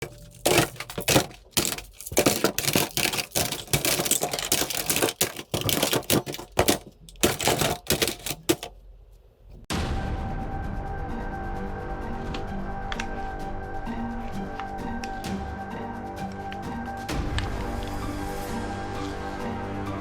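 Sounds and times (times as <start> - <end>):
music: 9.7 - 20.0.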